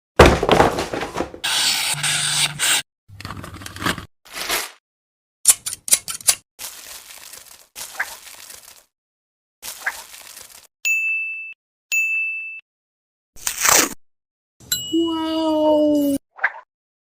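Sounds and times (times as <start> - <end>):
packaging scraping and tearing: 3.3 - 4.8, 5.5 - 8.9, 9.6 - 10.7, 13.4 - 14.0.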